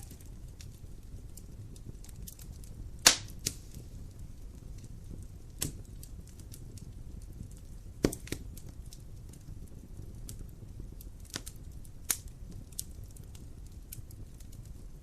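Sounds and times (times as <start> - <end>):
fire crackling and popping: 0.0 - 15.0
fire rumbling: 0.0 - 15.0.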